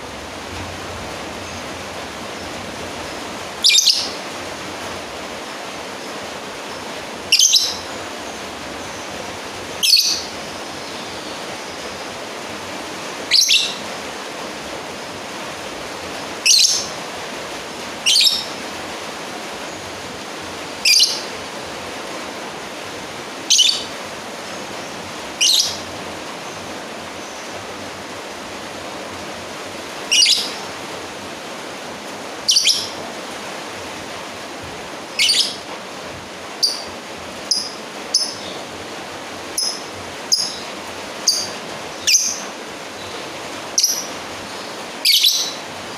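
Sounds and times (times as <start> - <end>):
steady hiss: 0.0 - 45.9
lovebird chirping: 3.6 - 4.2, 7.3 - 9.1, 9.8 - 12.0, 13.3 - 13.8, 16.4 - 16.9, 18.0 - 18.6, 20.8 - 21.3, 23.5 - 23.9, 24.8 - 25.8, 30.1 - 30.7, 32.4 - 33.0, 35.2 - 35.7, 36.6 - 36.9, 37.5 - 38.7, 39.6 - 43.2, 43.8 - 45.6.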